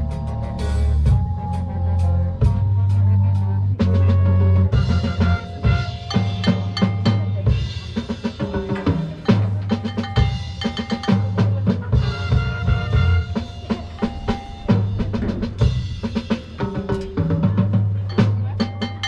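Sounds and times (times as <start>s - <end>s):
marching band held notes: 0.0s - 19.0s
snare and bass drums hitting: 4.8s - 19.0s.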